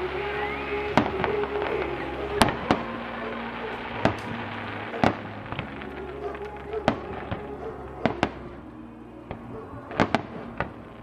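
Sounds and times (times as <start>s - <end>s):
fireworks bangs: 0.0s - 8.7s, 9.3s - 11.0s.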